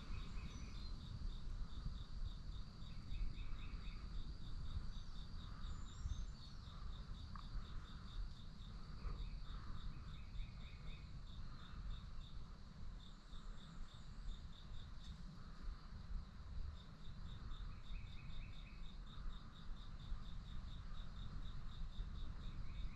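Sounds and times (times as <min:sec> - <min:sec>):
faint bird chirps: 0:00.0 - 0:01.1, 0:02.8 - 0:08.0, 0:08.9 - 0:12.4, 0:17.4 - 0:19.0
insect chirping: 0:00.0 - 0:22.9.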